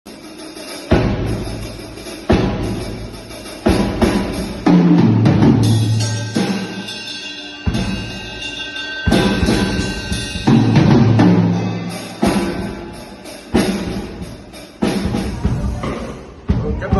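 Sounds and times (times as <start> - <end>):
cymbals ringing: 0.1 - 16.4
low drum booms: 13.6 - 16.9.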